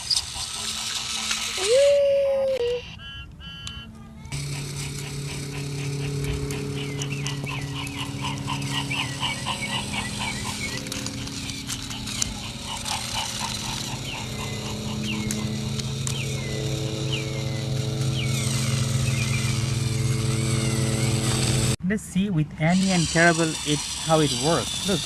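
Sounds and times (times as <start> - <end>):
rapid chirping calls: 0.0 - 1.8, 2.9 - 21.8, 22.7 - 25.0
toy train motor humming: 0.0 - 21.8, 22.6 - 25.0
falling chirps: 2.7 - 21.8.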